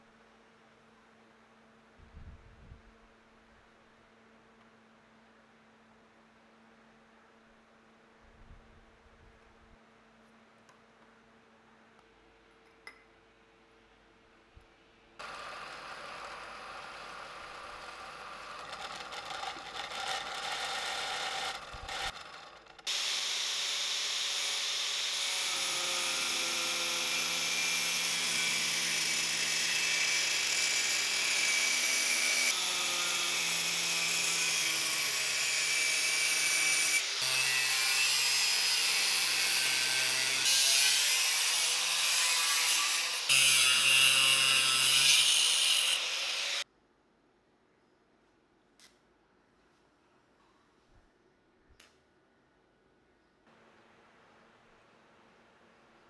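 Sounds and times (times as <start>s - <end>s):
electric power tool running: 15.2s - 38.3s.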